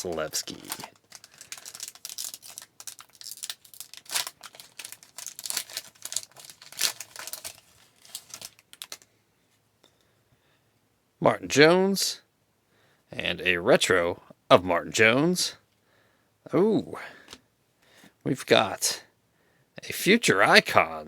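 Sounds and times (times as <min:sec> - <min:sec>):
cards rustling: 0:00.0 - 0:09.1
wrapper tearing and crinkling: 0:00.0 - 0:09.1.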